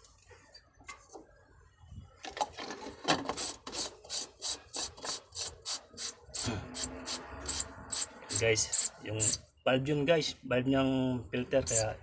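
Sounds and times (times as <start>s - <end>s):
rhythmic rasping strokes: 3.8s - 9.5s.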